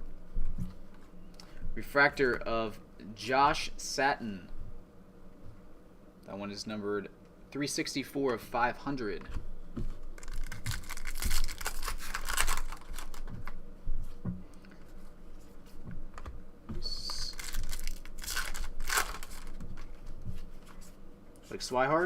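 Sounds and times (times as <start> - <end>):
cards shuffling: 9.8 - 13.6, 16.2 - 21.0
wrapper crinkling: 10.2 - 13.4, 17.1 - 20.1.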